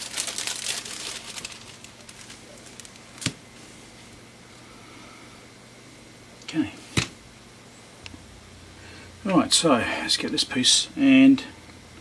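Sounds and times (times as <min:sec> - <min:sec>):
thin plastic crinkling: 0:00.0 - 0:03.5.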